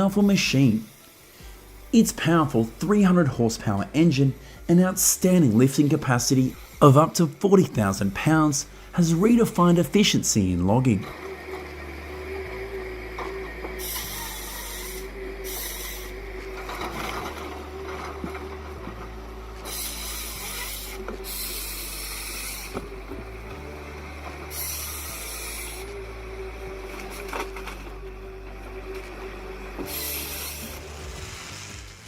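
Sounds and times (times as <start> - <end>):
harvesting machine engine running: 0.0 - 32.0
wood rubbing and rasping: 11.2 - 32.0.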